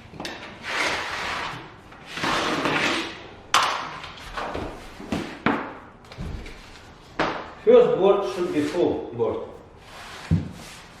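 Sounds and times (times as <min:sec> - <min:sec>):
floor planks scraping: 0:00.6 - 0:03.2, 0:09.8 - 0:11.0.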